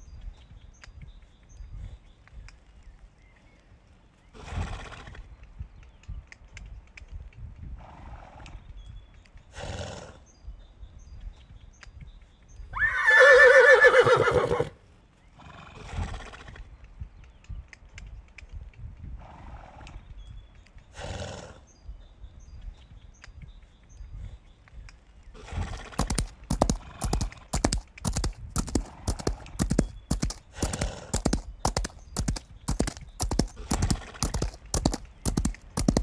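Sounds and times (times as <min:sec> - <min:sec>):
horse neighing: 0:12.8 - 0:14.8
horse breathing: 0:25.5 - 0:36.0.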